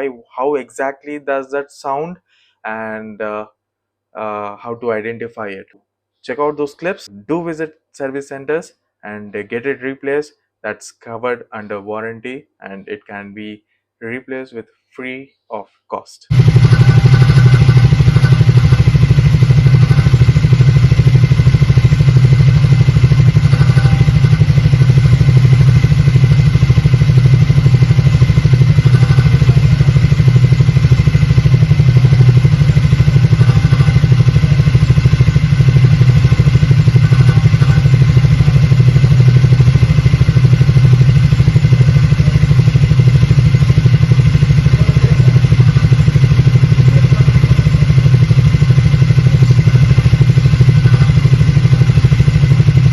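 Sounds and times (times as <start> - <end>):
abnormal exhaust muffler noise: 16.3 - 52.9
motorcycle engine running: 16.3 - 52.9.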